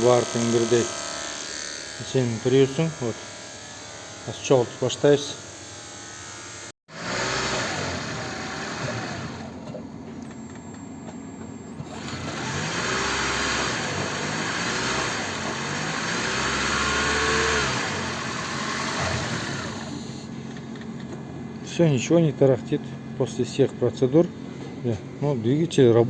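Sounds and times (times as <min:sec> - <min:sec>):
car engine starting and running: 0:06.9 - 0:20.3.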